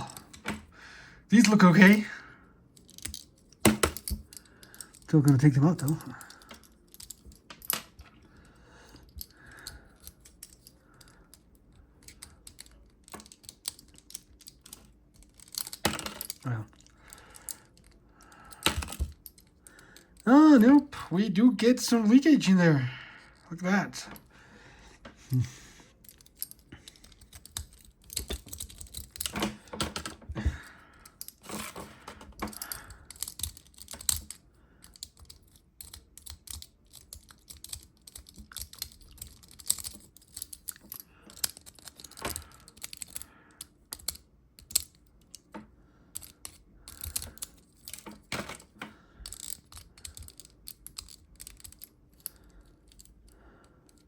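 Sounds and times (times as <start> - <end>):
clicks of plastic parts handled: 26.0 - 54.0.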